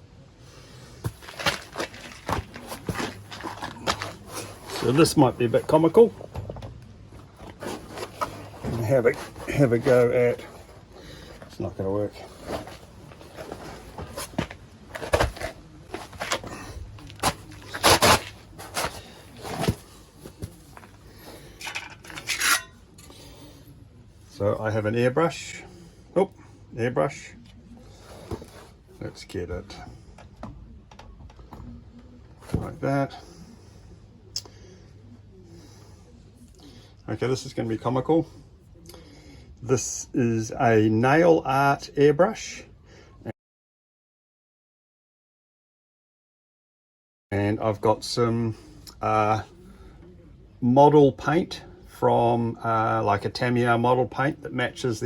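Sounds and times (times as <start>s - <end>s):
faint room noise: 0.0s - 43.3s, 47.3s - 55.0s
scraping or rustling: 0.6s - 6.4s, 7.2s - 22.8s.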